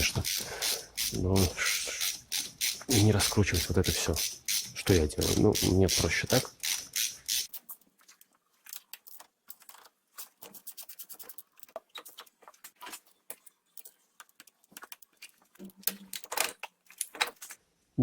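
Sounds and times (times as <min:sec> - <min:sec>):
metal tools clicking and scraping: 0:00.0 - 0:07.6.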